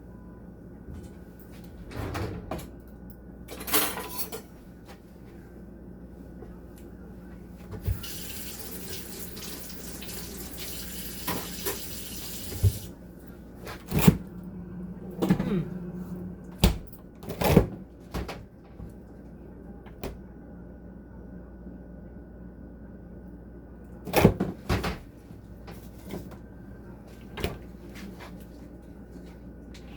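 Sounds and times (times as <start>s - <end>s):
kitchen tap running: 7.9s - 12.9s.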